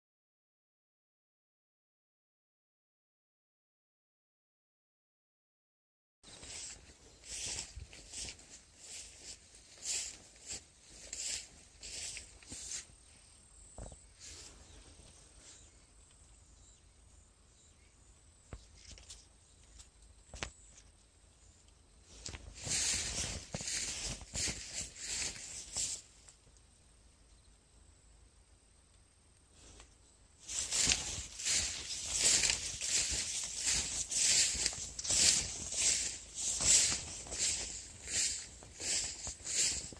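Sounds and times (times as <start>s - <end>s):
rustling and crunching: 6.3s - 13.1s, 18.5s - 26.5s, 29.6s - 39.9s.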